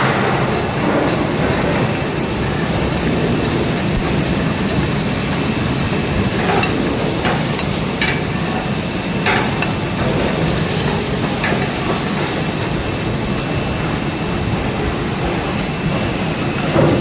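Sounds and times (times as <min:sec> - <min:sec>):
industrial machine rumbling: 0:00.0 - 0:17.0.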